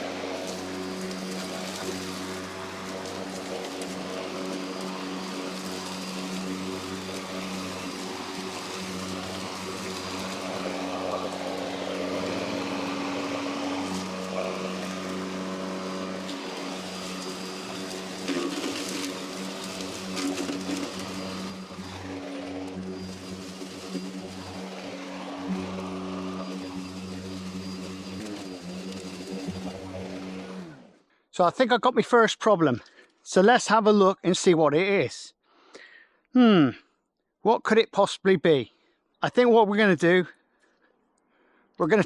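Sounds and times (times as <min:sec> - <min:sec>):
grass being cut: 0:00.0 - 0:31.0
electric lawnmower humming: 0:00.0 - 0:31.1.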